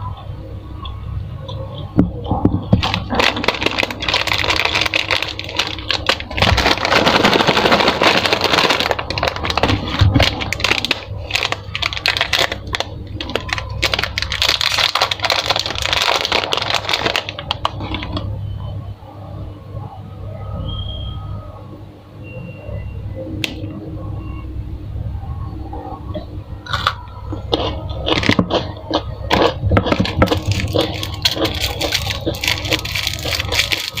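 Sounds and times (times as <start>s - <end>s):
plastic candy wrappers crinkling: 2.7s - 18.2s, 26.7s - 34.0s.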